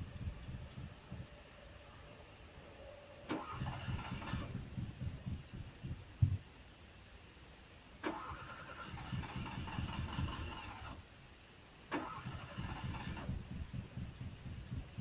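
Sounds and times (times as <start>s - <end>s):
engine cranking on starter: 3.2s - 5.0s, 8.0s - 11.0s, 11.9s - 13.7s.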